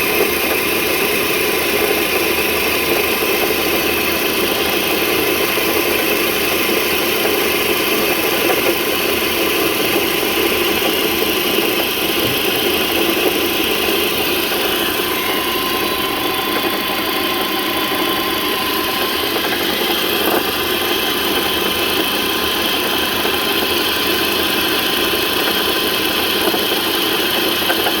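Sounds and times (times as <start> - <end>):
car engine idling: 0.0 - 28.0.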